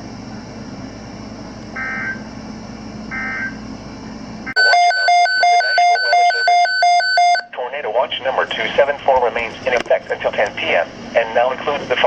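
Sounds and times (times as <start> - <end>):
alternating electronic alert tone: 4.5 - 7.5
warbling data chirps: 4.6 - 7.4
radio broadcast hiss: 7.5 - 12.0.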